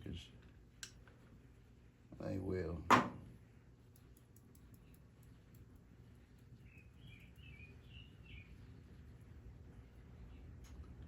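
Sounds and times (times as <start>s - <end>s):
quiet low hum: 0.0s - 11.0s
faint bird chirping: 6.4s - 9.1s.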